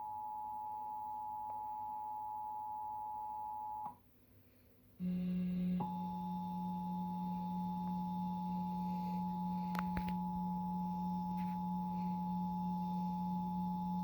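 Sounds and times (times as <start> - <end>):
low hum: 5.0 - 14.0
two-tone alarm: 5.0 - 14.0.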